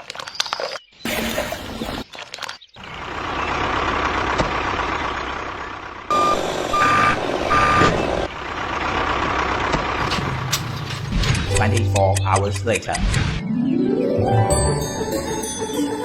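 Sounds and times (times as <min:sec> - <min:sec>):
heavy vehicle engine running: 0:02.8 - 0:13.1
reversing alarm beeps: 0:06.1 - 0:08.0.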